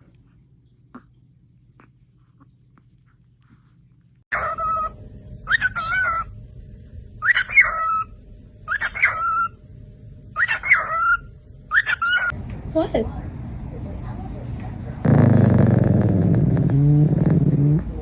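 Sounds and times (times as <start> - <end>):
animal calling: 4.3 - 6.3.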